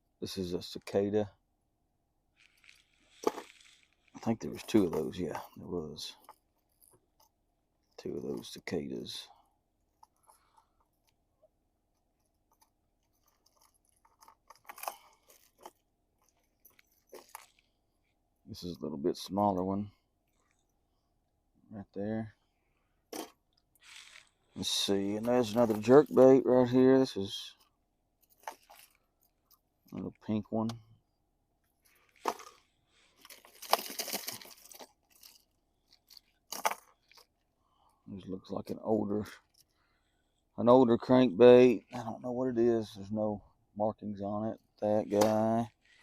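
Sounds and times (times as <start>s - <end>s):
plastic packaging crinkling: 2.4s - 4.8s, 32.0s - 37.3s.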